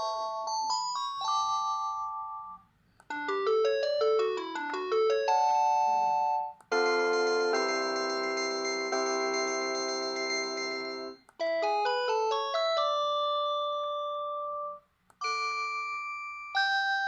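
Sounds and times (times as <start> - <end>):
electronic phone ringtones: 0.0 - 17.0.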